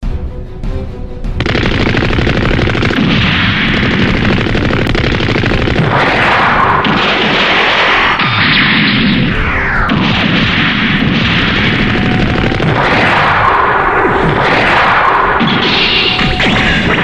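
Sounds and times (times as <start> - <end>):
machine-gun fire: 1.4 - 17.0.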